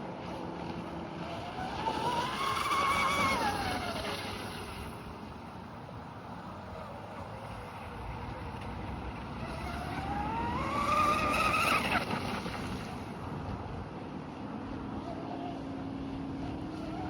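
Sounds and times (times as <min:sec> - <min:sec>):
boat hull and spray hissing: 0:00.1 - 0:13.6
electric motor whine: 0:09.3 - 0:12.5.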